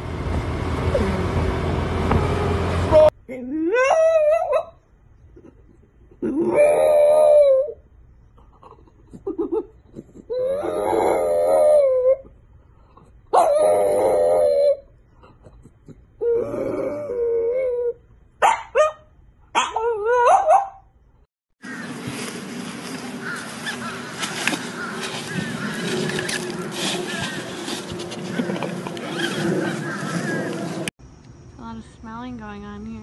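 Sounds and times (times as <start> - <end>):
dog yipping: 3.7 - 4.8, 13.3 - 14.8, 18.4 - 20.8
dog howling: 10.4 - 12.2, 13.4 - 14.9.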